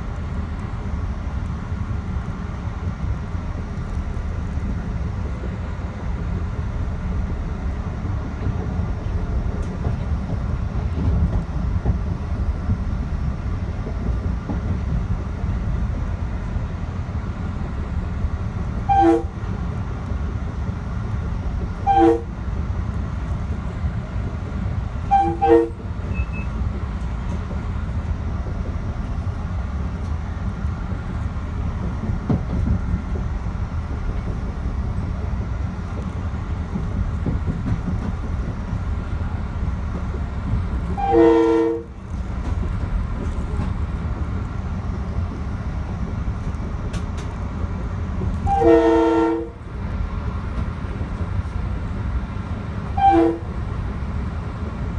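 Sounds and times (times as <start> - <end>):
train rumbling: 0.0 - 54.9
train horn blasts: 18.8 - 19.5, 21.8 - 22.4, 25.0 - 26.5, 41.0 - 42.0, 48.4 - 49.6, 52.9 - 53.6.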